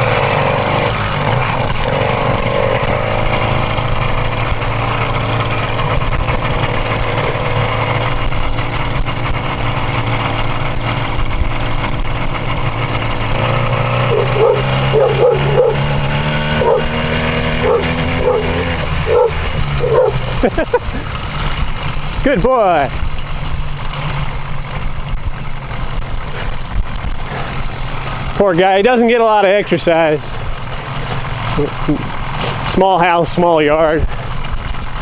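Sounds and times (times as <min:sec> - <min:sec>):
two-stroke engine running: 0:00.0 - 0:35.0
dog whining: 0:14.1 - 0:15.9, 0:16.6 - 0:20.4.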